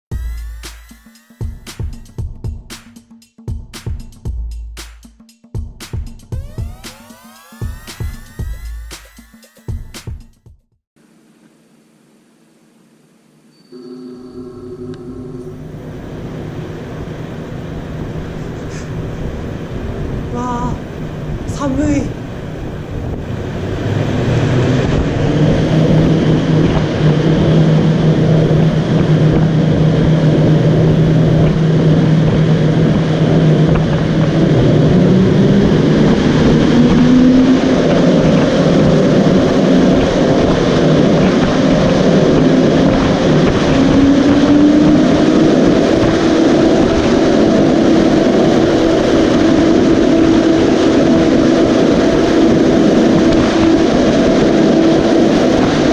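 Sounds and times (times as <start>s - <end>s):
fan hum rising in pitch: 0.1s - 10.4s, 11.0s - 55.9s
large fan blowing strong wind: 14.5s - 55.9s.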